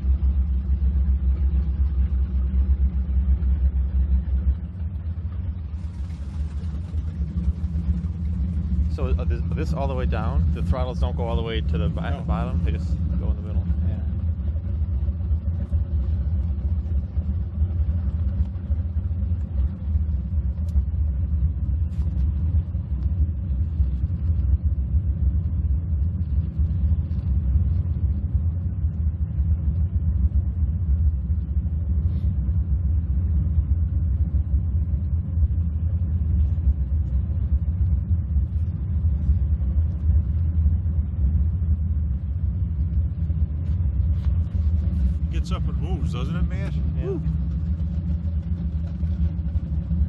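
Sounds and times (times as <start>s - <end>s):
powerboat engines rumbling: 0.0s - 50.0s.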